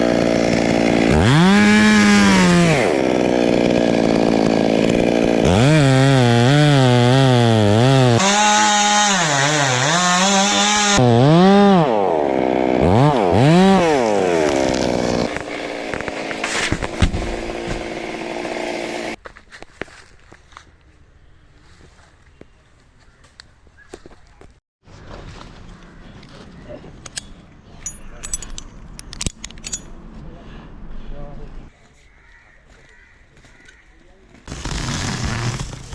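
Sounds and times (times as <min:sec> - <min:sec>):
chainsaw cutting wood: 0:00.0 - 0:19.2, 0:34.4 - 0:35.9.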